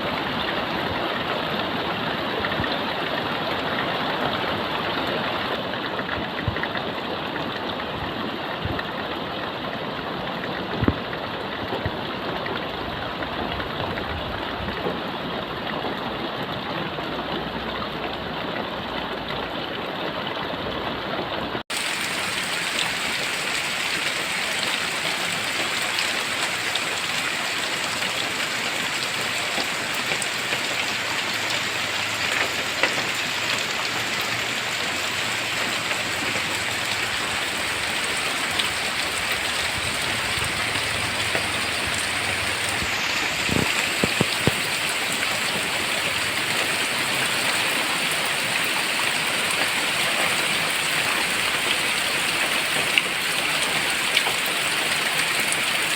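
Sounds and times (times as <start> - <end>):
steady rain hiss: 21.7 - 55.9
raindrop taps: 32.3 - 33.2, 35.6 - 42.9, 43.5 - 46.8.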